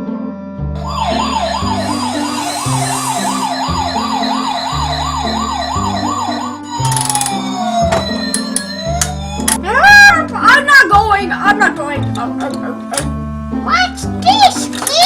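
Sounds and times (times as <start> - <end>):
low electronic note pattern: 0.8 - 6.6
toy siren wailing: 0.8 - 10.1.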